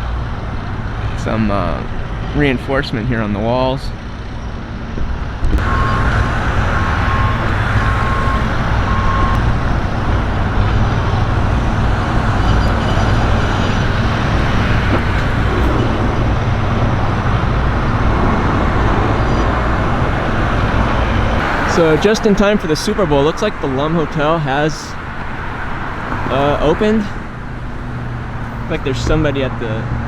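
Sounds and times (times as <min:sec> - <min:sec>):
traffic rumble: 0:00.0 - 0:30.0
high beeps: 0:05.6 - 0:16.9.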